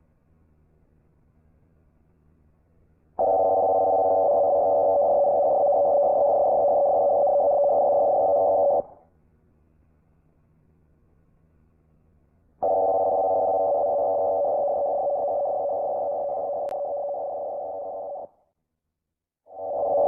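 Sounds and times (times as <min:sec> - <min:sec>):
multi-pitched alarm tone: 0:03.2 - 0:08.8, 0:12.6 - 0:18.3, 0:19.5 - 0:20.0.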